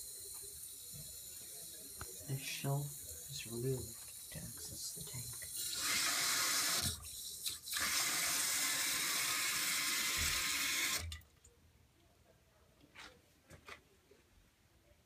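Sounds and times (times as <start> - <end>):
water hissing into toilet tank: 0.0 - 11.2.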